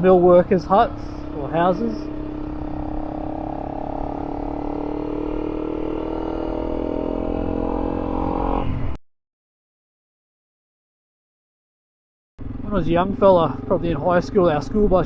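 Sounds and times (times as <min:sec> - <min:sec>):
motorcycle engine running: 0:00.0 - 0:08.6, 0:12.4 - 0:15.0.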